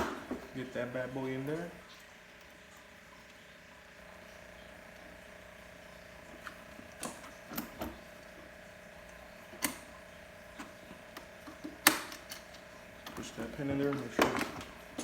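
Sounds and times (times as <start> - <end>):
faint steady hum: 0.0 - 15.0
parts clicking and knocking: 10.6 - 15.0.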